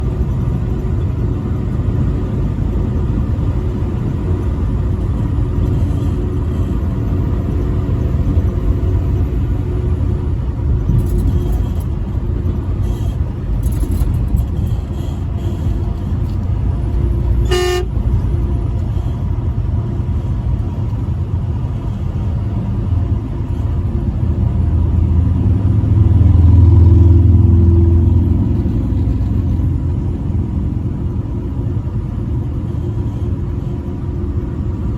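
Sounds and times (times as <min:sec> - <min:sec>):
truck engine and road rumble: 0:00.0 - 0:34.9
truck horn blast: 0:14.6 - 0:16.0, 0:17.3 - 0:18.2.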